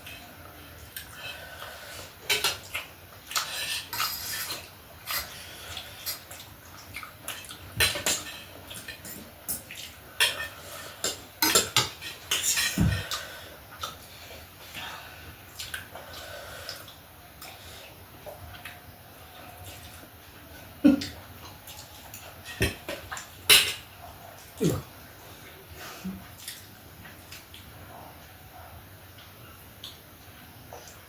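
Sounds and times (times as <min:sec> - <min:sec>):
cutlery clinking on plates: 0:07.3 - 0:13.2.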